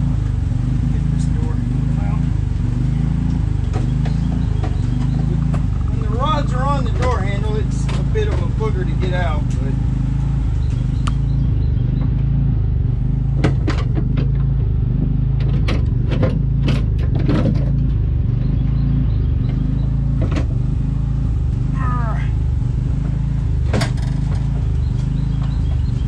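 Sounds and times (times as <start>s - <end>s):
low motor hum: 0.0s - 26.0s
sharp metallic clicks and knocks: 6.8s - 8.6s, 13.3s - 18.8s, 23.0s - 26.0s.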